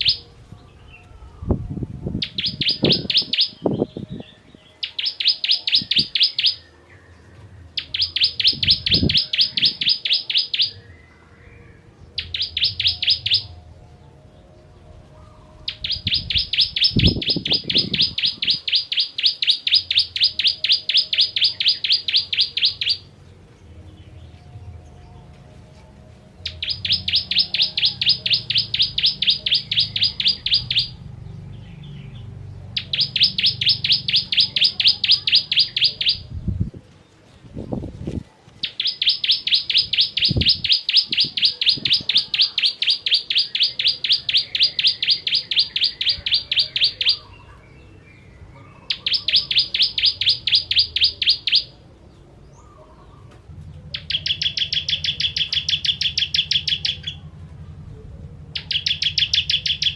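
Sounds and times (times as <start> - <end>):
bird singing rapid trills: 0.0 - 0.3, 1.4 - 6.8, 7.7 - 13.6, 15.5 - 23.1, 26.4 - 36.6, 38.6 - 51.8, 53.9 - 57.3, 58.5 - 59.9.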